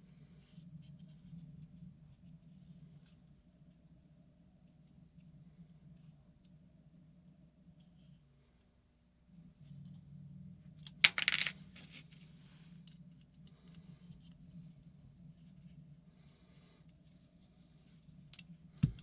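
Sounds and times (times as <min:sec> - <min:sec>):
metal object dropping on hard surface: 0:11.0 - 0:11.6.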